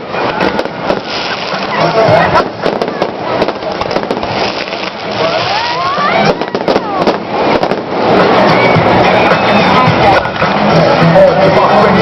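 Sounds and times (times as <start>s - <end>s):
fireworks bangs and crackles: 0.0s - 10.6s
falling firework whistle: 2.6s - 9.8s.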